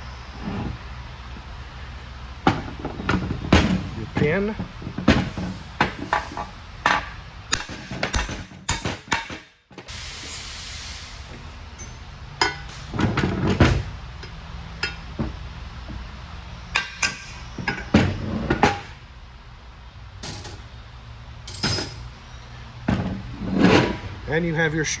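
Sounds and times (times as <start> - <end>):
steady low hum: 0.0 - 8.8, 9.9 - 25.0
metal parts clinking: 21.4 - 22.4.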